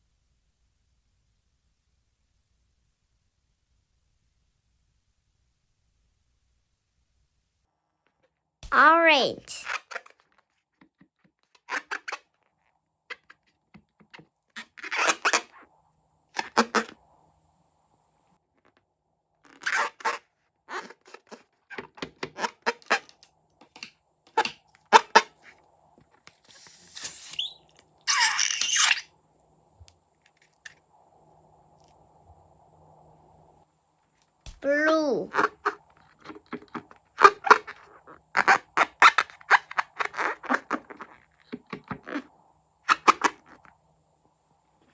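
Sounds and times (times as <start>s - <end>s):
balloon squeaks and crackles: 11.2s - 13.5s, 14.6s - 15.6s, 16.4s - 16.9s, 19.4s - 23.1s, 26.4s - 29.1s, 35.4s - 42.2s.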